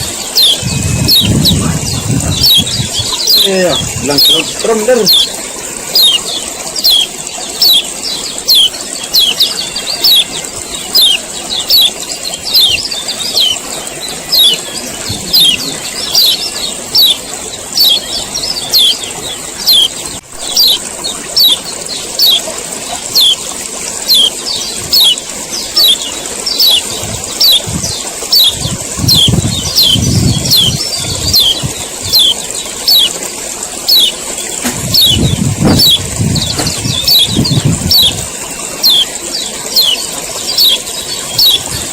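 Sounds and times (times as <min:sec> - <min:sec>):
low rumbling: 0:00.0 - 0:22.4
bird chirping call: 0:00.0 - 0:41.9.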